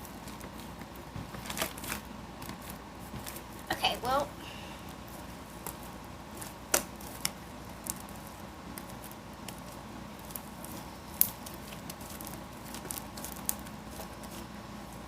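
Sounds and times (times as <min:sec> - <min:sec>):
slime squishing and popping: 0:05.6 - 0:14.4
slime snapping: 0:06.4 - 0:13.7.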